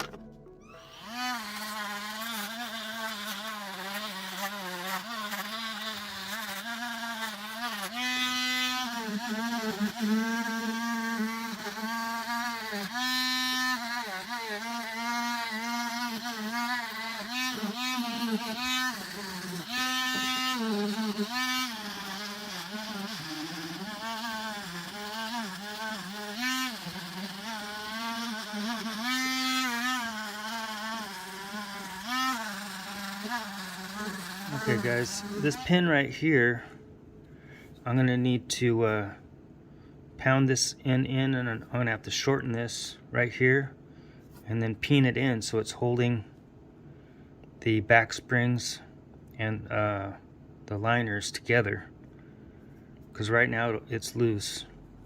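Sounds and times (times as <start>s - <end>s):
small electric motor tool buzzing: 0.0s - 35.9s.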